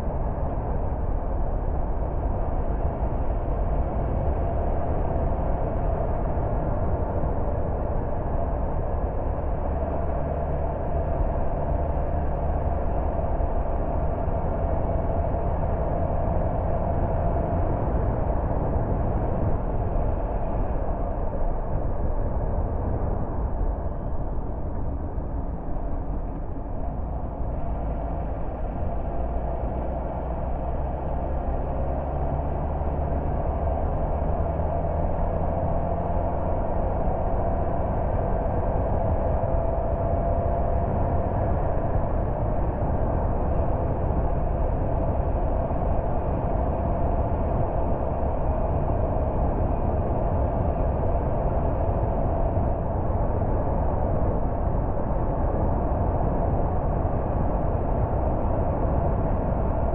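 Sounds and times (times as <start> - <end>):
car engine running: 9.5 - 54.4.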